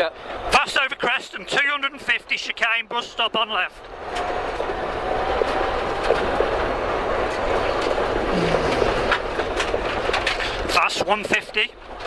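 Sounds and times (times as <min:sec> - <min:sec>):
tyre and road noise: 0:03.1 - 0:12.0.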